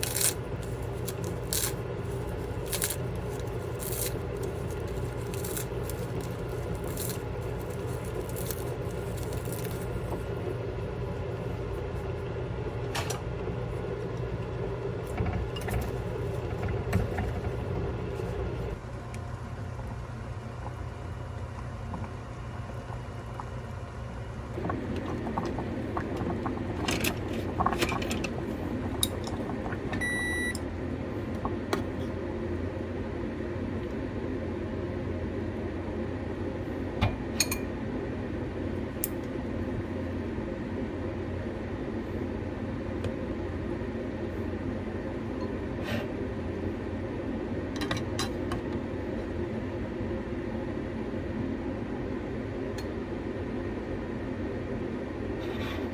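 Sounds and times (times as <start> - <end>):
appliance hum: 0.0 - 55.9
short electronic beep: 30.0 - 30.6.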